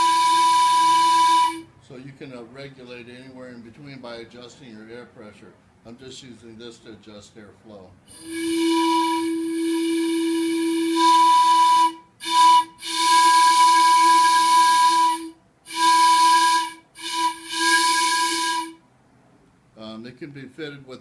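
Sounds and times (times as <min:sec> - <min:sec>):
train whistle blasts: 0:00.0 - 0:01.8, 0:08.1 - 0:18.8.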